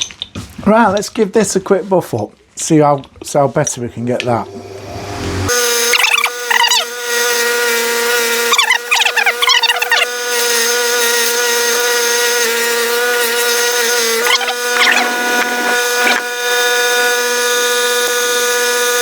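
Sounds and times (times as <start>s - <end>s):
buffing wheel motor humming: 4.3s - 19.0s
clamp squealing on buffing wheel: 5.5s - 17.5s.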